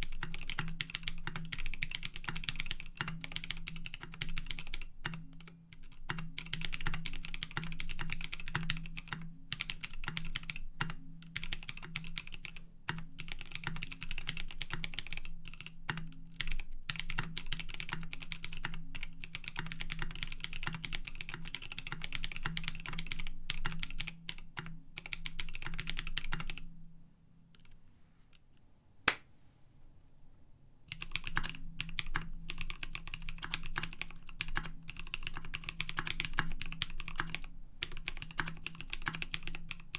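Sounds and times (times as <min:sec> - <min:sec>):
typing on mechanical keyboard: 0:00.0 - 0:26.6, 0:30.9 - 0:39.9
single sharp click: 0:29.1 - 0:29.3.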